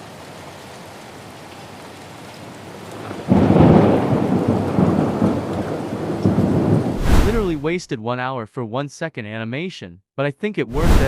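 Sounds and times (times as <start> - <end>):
rolling rumble of thunder: 3.0 - 7.5
heavy rain hissing: 6.5 - 7.8, 10.7 - 11.0.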